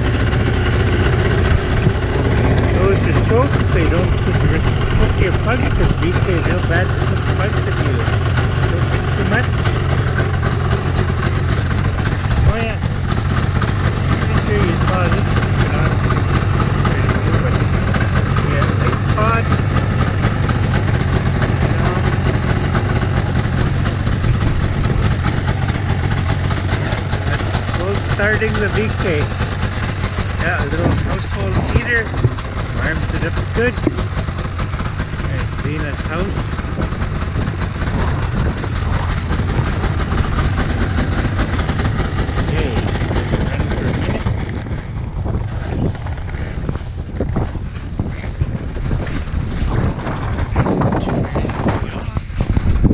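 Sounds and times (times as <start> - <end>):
snowmobile engine idling: 0.0 - 52.9
wind buffeting microphone: 9.2 - 52.9.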